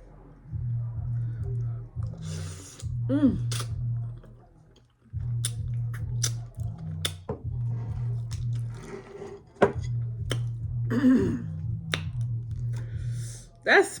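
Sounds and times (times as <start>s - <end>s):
steady low hum: 0.0s - 9.2s
mouth clicks and lip smacks: 1.5s - 7.3s, 10.2s - 10.6s, 11.8s - 13.4s
person humming: 2.1s - 3.8s, 10.9s - 11.7s.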